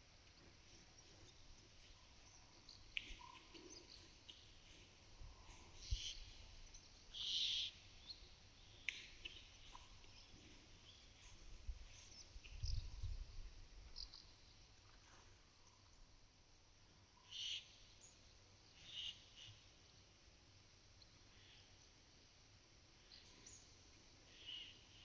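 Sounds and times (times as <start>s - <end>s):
small birds calling: 0.0s - 14.6s, 17.2s - 17.8s.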